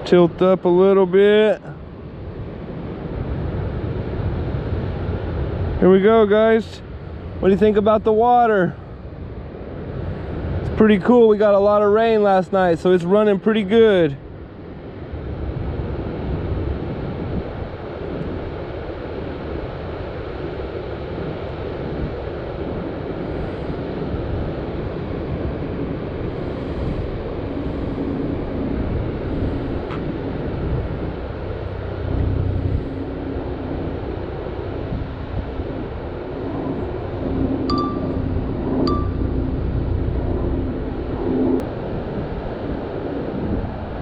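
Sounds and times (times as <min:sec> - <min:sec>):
outdoor rushing noise: 0:14.8 - 0:44.0.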